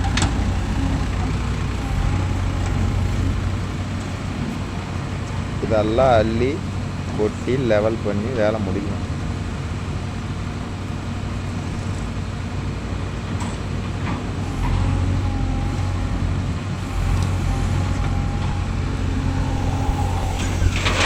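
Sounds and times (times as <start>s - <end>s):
diesel engine droning: 0.0s - 21.0s
faint wavering whine: 18.4s - 21.0s.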